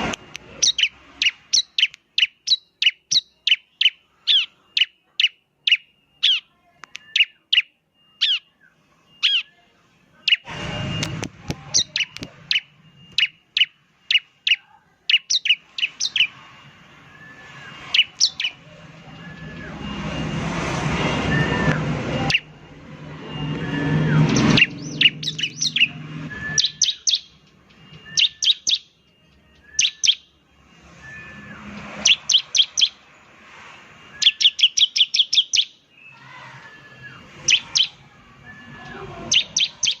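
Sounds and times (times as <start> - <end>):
bird calling sharp high notes: 0.0 - 8.5, 10.2 - 28.9, 29.5 - 33.1, 34.0 - 40.0.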